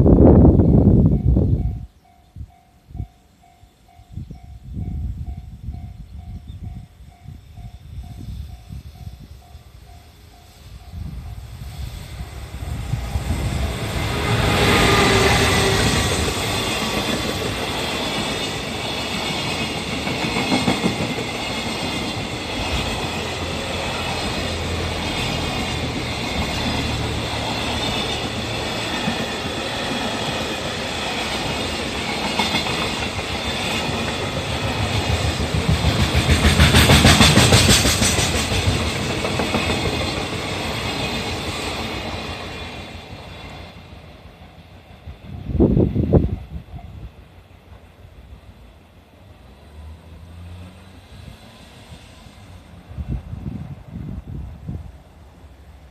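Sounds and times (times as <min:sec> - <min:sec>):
freight train wheels clacking: 0:07.6 - 0:45.5.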